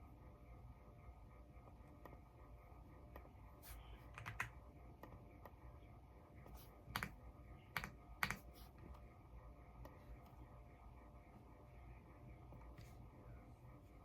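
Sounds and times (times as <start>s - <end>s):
mechanical keyboard typing: 4.1s - 4.6s, 6.9s - 8.5s.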